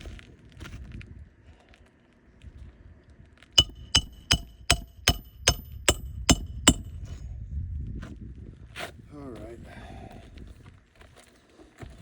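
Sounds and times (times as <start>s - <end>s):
hammer striking nail: 3.6s - 7.2s.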